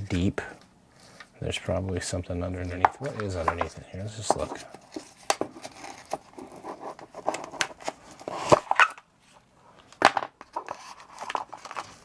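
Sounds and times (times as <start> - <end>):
cardboard box rustling: 4.4 - 8.8.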